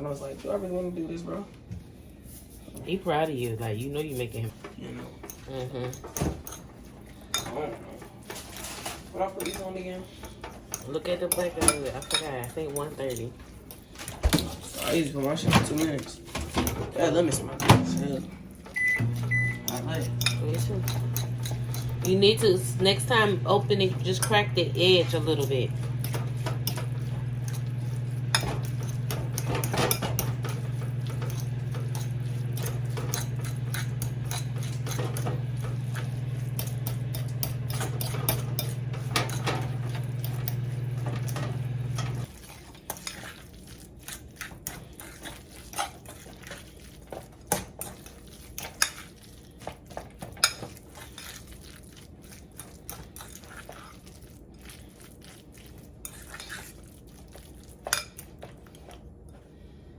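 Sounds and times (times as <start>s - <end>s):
utensils clinking on dishes: 4.4s - 51.8s
microwave oven humming: 16.1s - 42.3s.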